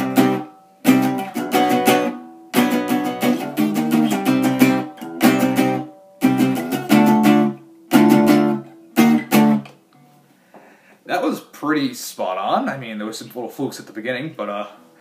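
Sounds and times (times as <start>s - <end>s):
acoustic guitar strumming chords: 0.0s - 10.2s.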